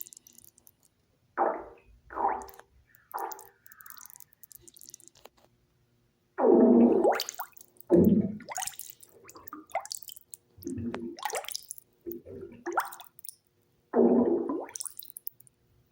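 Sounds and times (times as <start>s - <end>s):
water dripping: 0.0s - 5.3s, 6.8s - 13.5s, 14.1s - 15.6s
gurgles in bathwater: 1.4s - 5.1s, 6.4s - 13.4s, 14.0s - 15.4s.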